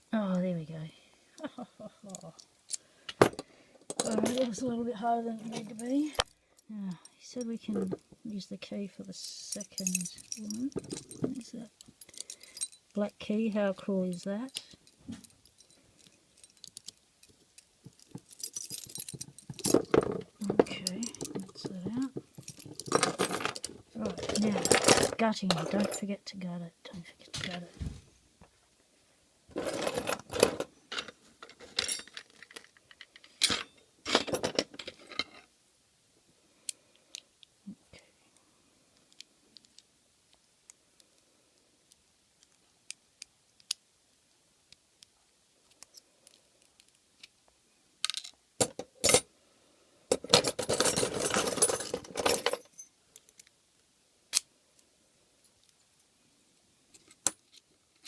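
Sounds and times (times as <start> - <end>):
metal lock parts clinking: 2.0 - 4.7, 5.4 - 8.2, 9.2 - 13.0, 13.6 - 26.1, 29.6 - 35.4, 48.0 - 49.3, 50.1 - 53.5.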